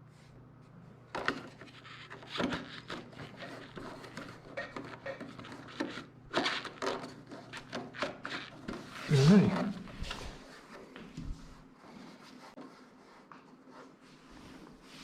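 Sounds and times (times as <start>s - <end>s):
plastic cover scraping and rubbing: 1.2s - 10.7s.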